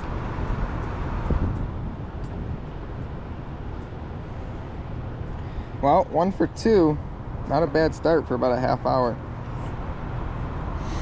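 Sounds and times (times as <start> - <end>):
wind buffeting microphone: 0.0 - 8.3.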